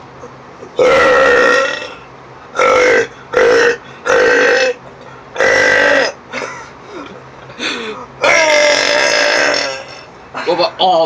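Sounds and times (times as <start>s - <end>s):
loud burps: 0.8s - 4.8s, 5.4s - 6.5s, 8.2s - 10.1s.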